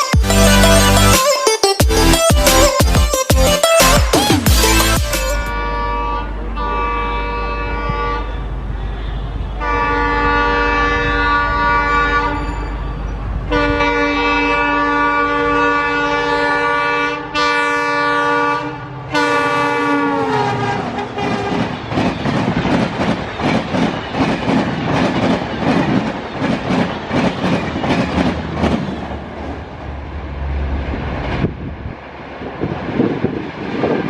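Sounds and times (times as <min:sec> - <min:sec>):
locomotive air horn blasts: 0:04.7 - 0:21.8
train coaches clattering over rail joints: 0:21.1 - 0:29.9.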